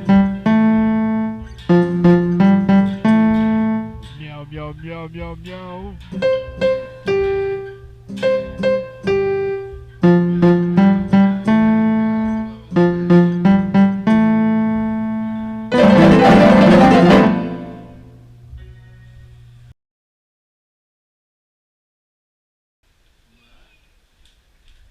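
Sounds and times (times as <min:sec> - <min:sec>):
ringing melody notes: 0:00.0 - 0:04.2, 0:10.0 - 0:18.2.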